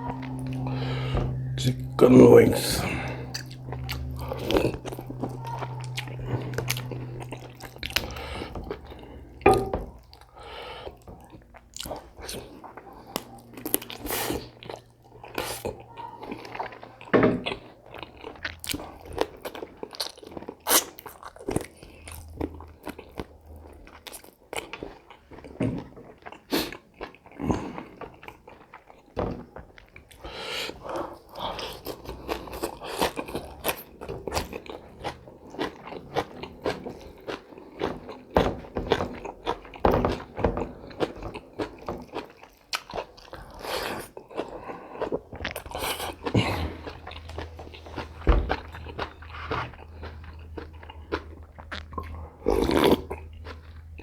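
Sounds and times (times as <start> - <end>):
person chewing crunchy chicken: 0.0 - 54.0.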